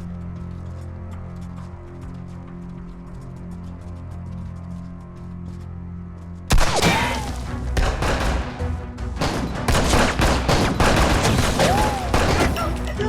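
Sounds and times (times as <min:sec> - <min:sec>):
tense drama music: 0:00.0 - 0:13.0
gunfire: 0:06.5 - 0:12.8.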